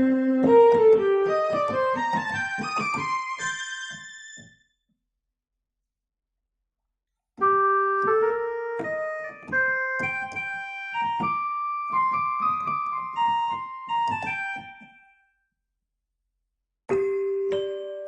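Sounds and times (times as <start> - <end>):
keyboard melody single notes: 0.0 - 4.5, 7.4 - 15.1.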